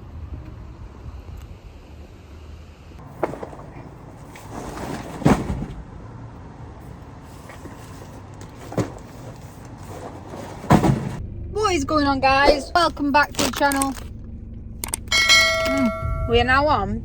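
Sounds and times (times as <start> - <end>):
low steady rumble: 9.8 - 17.0.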